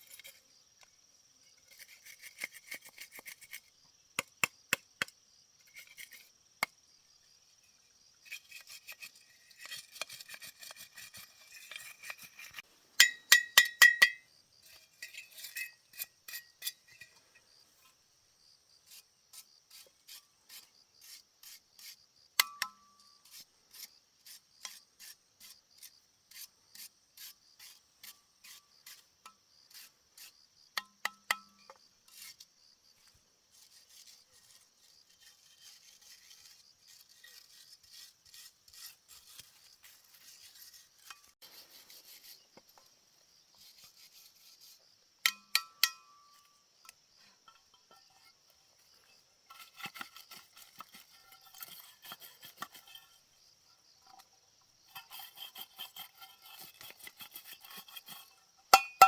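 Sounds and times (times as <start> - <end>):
hand tool rasping: 8.3 - 17.3, 33.7 - 42.6, 47.4 - 53.3, 54.9 - 59.0
sharp metallic clinks: 13.0 - 14.2, 58.8 - 59.0.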